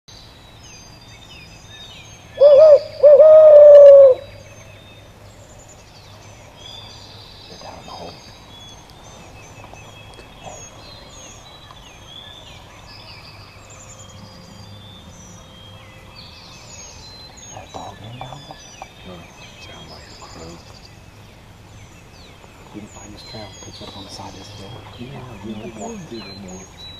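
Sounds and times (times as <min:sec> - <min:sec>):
faint distant bird call: 0:00.1 - 0:26.9
songbirds chirping: 0:00.1 - 0:26.9
loud hooting call: 0:02.4 - 0:04.6.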